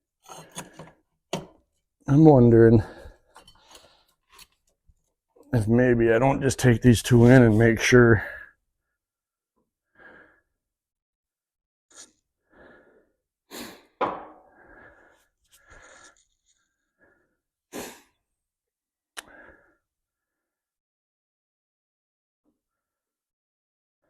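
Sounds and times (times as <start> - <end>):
parts scraping and knocking: 0.2 - 1.7, 3.3 - 4.8.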